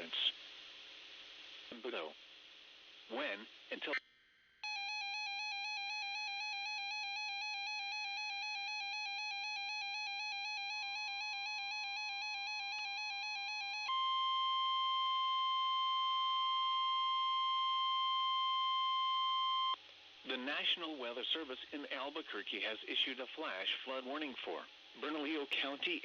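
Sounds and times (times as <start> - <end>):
loud steady alarm tone: 4.6 - 19.8.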